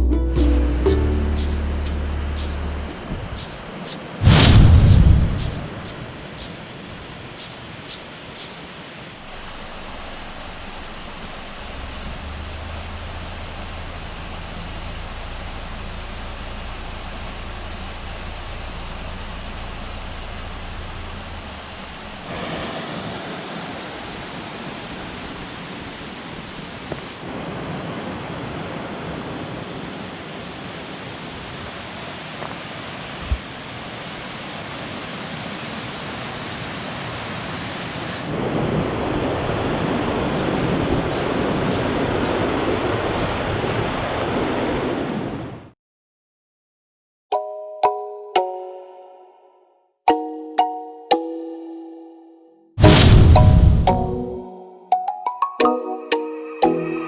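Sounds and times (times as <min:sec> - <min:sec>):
low hum: 0:00.0 - 0:07.1, 0:09.2 - 0:22.3
high whine: 0:00.4 - 0:08.1, 0:09.2 - 0:22.3, 0:52.8 - 0:54.4
stream and waterfall rushing: 0:00.4 - 0:14.8, 0:21.2 - 0:44.7.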